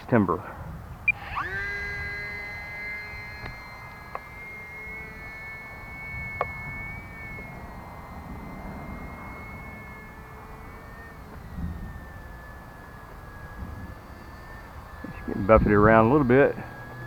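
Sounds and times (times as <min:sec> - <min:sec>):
model plane motor whine: 0:00.0 - 0:17.0
short clicks: 0:01.1 - 0:17.0.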